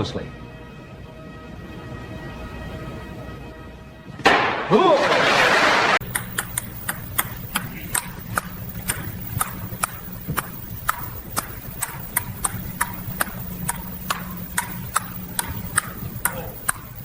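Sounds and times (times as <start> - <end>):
steady low hum: 0.0 - 4.2, 6.0 - 17.0
sharp clicks: 6.0 - 17.0.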